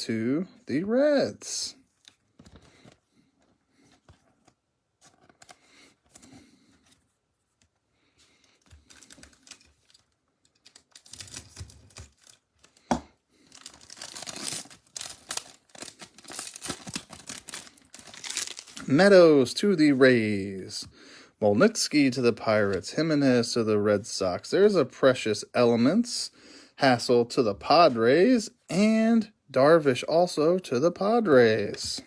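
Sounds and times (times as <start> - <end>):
soft card handling: 1.8 - 18.9
wrapper tearing and crinkling: 8.8 - 12.8, 13.4 - 18.9.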